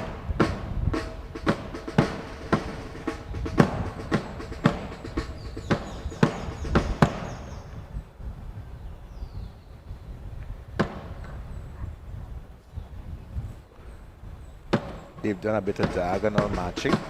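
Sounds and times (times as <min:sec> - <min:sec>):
wind rumble on microphone: 0:00.0 - 0:01.8, 0:02.8 - 0:14.8
marching drum beats: 0:00.0 - 0:07.8, 0:14.7 - 0:17.0.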